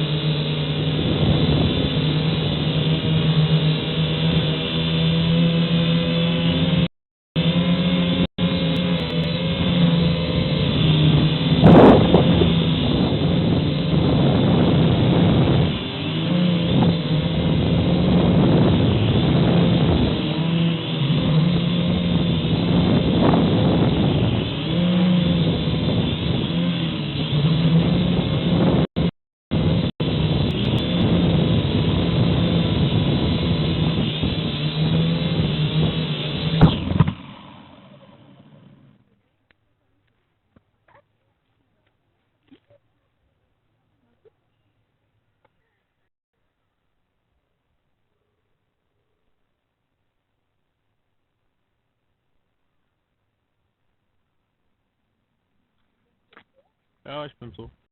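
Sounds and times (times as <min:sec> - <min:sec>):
drone propellers buzzing: 0:00.0 - 0:39.0
wind rushing: 0:09.6 - 0:37.0.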